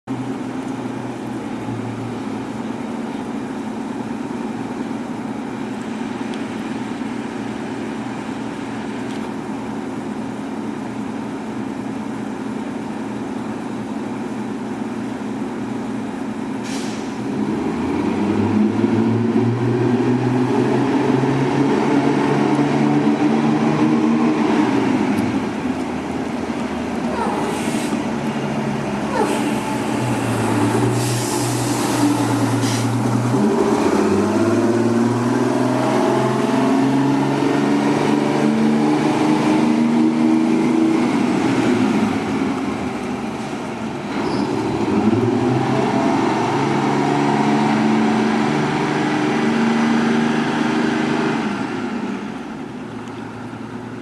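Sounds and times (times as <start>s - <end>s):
bus diesel engine revving: 16.1s - 54.0s
brief hiss: 16.6s - 17.2s.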